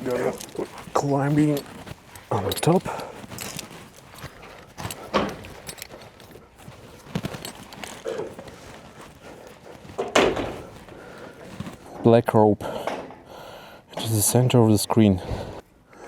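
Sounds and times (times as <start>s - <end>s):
hollow knocks and clunks: 9.9s - 11.1s.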